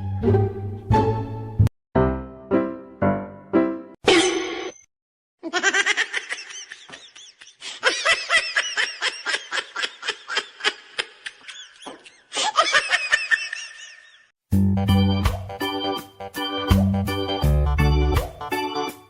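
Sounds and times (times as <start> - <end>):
high-pitched laughter: 5.4 - 14.3.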